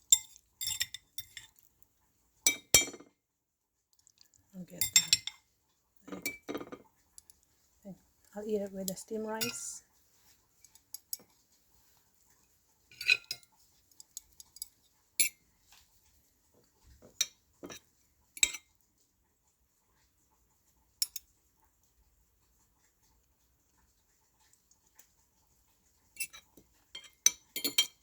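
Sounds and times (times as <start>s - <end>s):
cutlery clinking on a dish: 0.0s - 1.6s, 2.5s - 3.2s, 4.8s - 5.5s, 6.1s - 7.3s, 9.4s - 9.8s, 10.6s - 11.4s, 12.9s - 15.8s, 17.0s - 18.8s, 21.0s - 21.4s, 26.2s - 28.0s.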